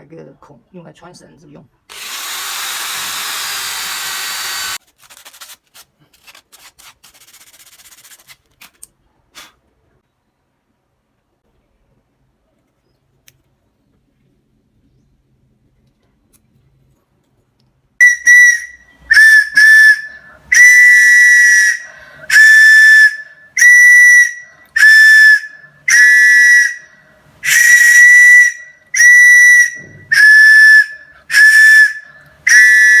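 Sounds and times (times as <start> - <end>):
shrill bamboo whistle blasts: 1.9 - 4.8, 18.0 - 33.0.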